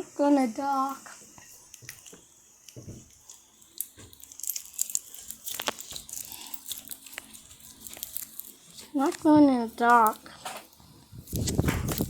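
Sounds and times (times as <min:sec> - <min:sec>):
slime crackling and clicking: 0:03.3 - 0:10.3.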